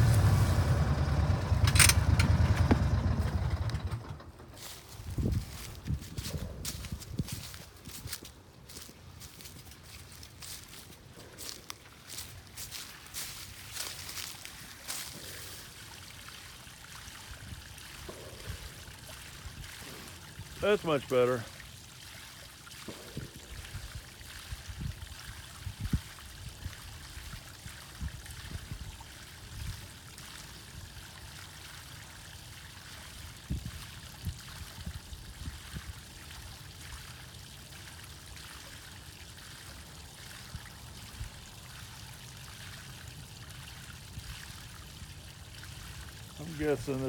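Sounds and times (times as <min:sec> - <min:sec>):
low bumps: 0:00.0 - 0:07.4
water rushing through drain pipe: 0:00.0 - 0:47.0.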